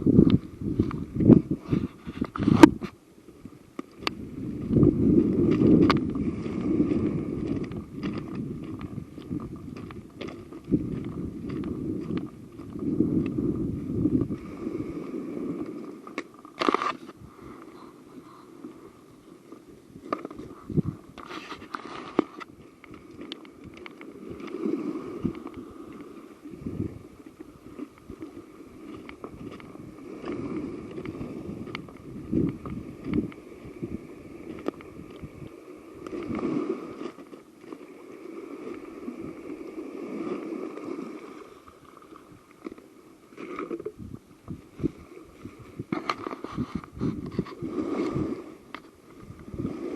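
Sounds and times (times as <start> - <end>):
wind buffeting microphone: 0.0 - 15.9, 19.8 - 37.2, 43.7 - 49.9.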